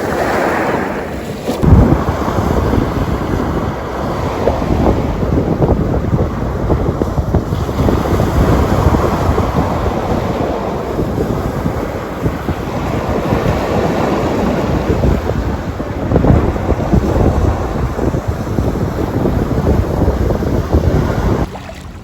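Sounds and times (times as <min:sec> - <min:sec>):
ocean surf washing: 0:00.0 - 0:22.0
wind buffeting microphone: 0:00.0 - 0:22.0.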